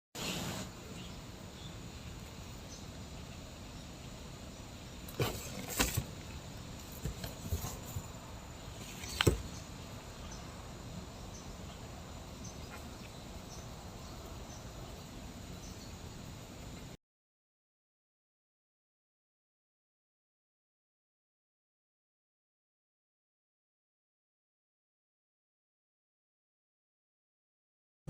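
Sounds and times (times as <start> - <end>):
low background hiss: 0.2 - 17.0.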